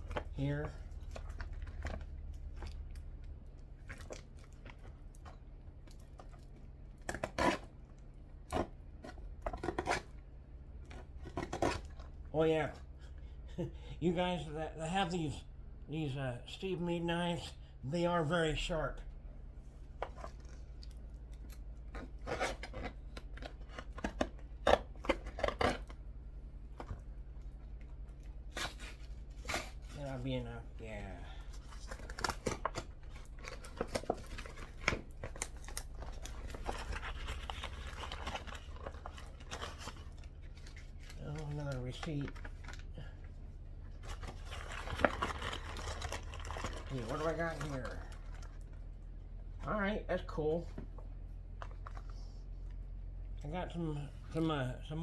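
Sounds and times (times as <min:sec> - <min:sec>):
faint low hum: 0:00.0 - 0:55.0
packaging tearing: 0:31.3 - 0:42.9, 0:44.0 - 0:48.6
packaging rustling and clicking: 0:31.4 - 0:43.0, 0:44.0 - 0:48.8.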